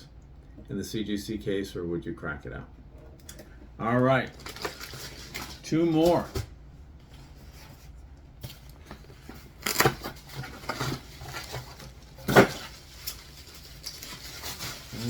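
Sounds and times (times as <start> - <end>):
packaging scraping and rustling: 4.2 - 15.0.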